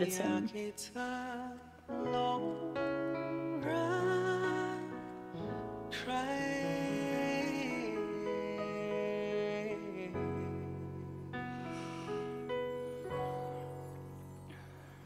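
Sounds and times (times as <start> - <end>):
man singing a ballad: 0.0 - 11.6.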